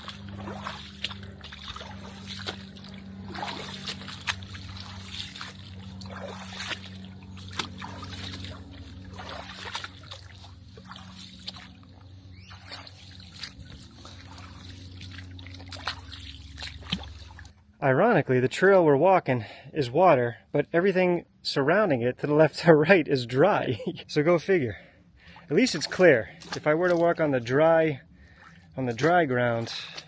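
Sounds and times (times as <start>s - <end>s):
footsteps sloshing through water: 0.0s - 17.7s, 24.7s - 30.0s
low steady hum: 0.0s - 30.0s.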